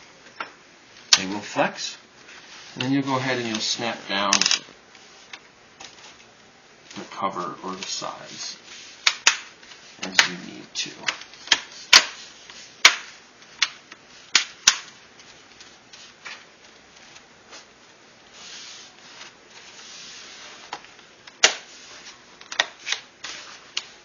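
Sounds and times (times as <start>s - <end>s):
soft rubbing: 15.2s - 20.9s, 21.6s - 22.3s.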